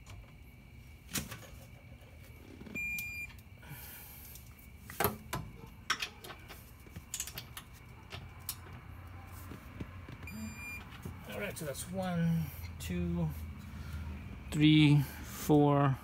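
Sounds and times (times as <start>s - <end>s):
short electronic beep: 10.3s - 10.8s.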